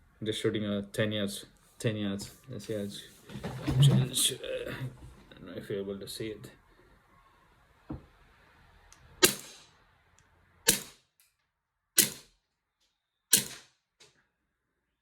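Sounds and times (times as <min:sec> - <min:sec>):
pistol shots: 0:09.2 - 0:09.7, 0:10.7 - 0:11.0, 0:12.0 - 0:12.3, 0:13.3 - 0:13.7.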